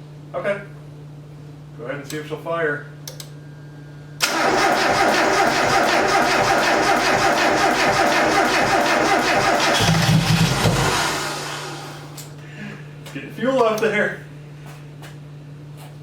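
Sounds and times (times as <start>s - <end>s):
engine cranking on starter: 4.2s - 12.2s.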